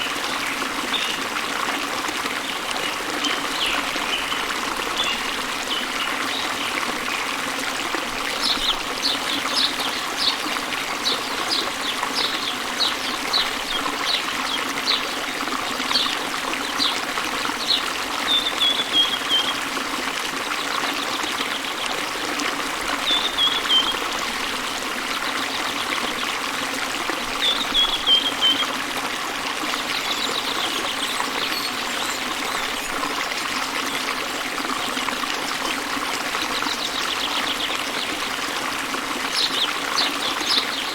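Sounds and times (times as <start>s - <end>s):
water trickling: 0.0s - 40.9s
small birds chirping: 8.3s - 15.2s, 15.9s - 19.6s.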